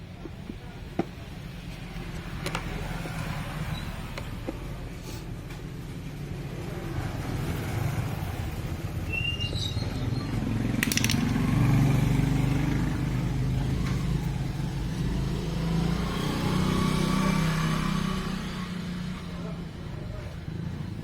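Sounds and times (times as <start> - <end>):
motorcycle engine running: 9.9 - 21.0
sharp click: 10.8 - 11.4.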